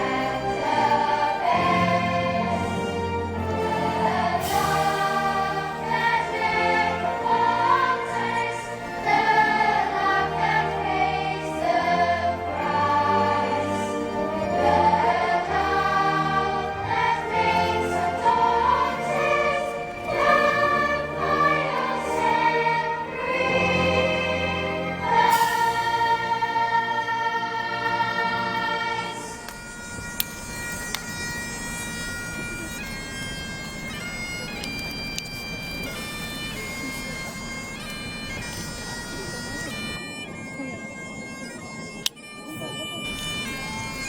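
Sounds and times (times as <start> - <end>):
choir singing a hymn: 0.0 - 29.6
military band playing: 0.0 - 44.0.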